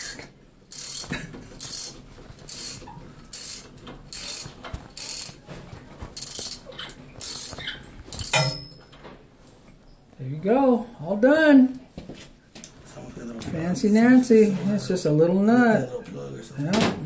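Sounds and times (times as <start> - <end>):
ratchet wrench clicking: 0.0 - 5.4, 6.2 - 6.6, 7.2 - 8.6.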